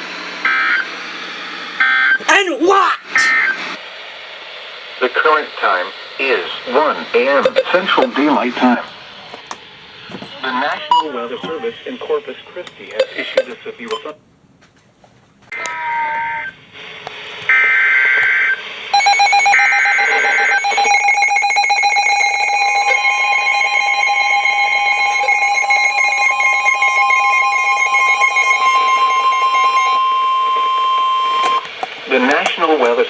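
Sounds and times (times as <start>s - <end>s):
pulsing electronic alarm: 17.6s - 31.6s
screeching data bursts: 19.0s - 31.6s
steady warning tone: 19.0s - 31.7s.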